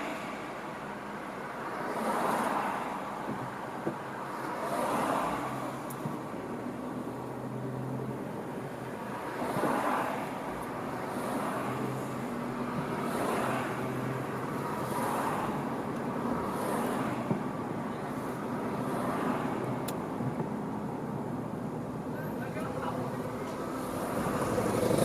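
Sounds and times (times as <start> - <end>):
road and engine noise: 0.0 - 25.0.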